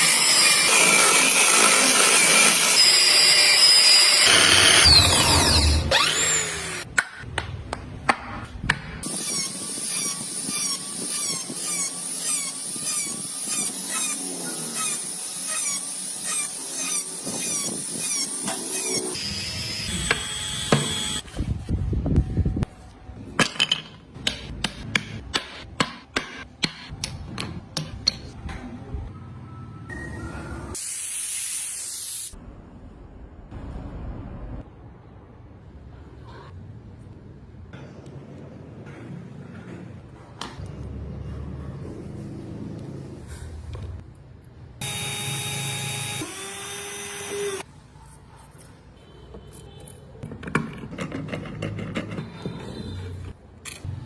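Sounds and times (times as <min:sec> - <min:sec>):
power tool whining: 0:09.2 - 0:21.2, 0:44.8 - 0:47.6.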